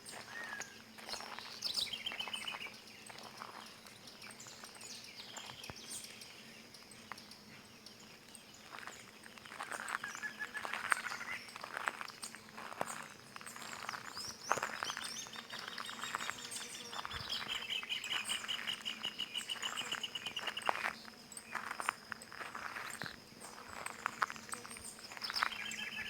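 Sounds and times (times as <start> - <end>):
wild birds calling and chirping: 0.0 - 8.8, 9.4 - 21.6, 22.2 - 26.0.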